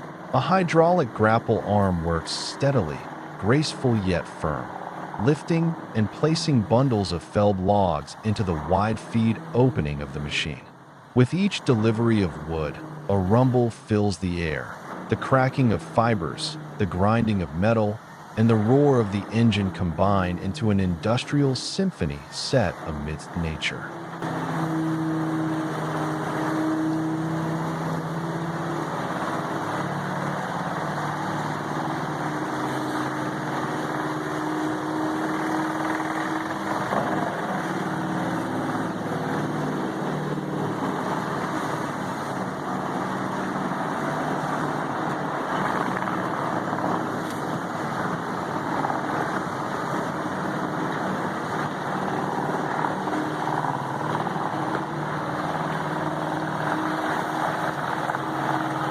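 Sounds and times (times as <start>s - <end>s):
diesel engine running: 0.0s - 58.9s.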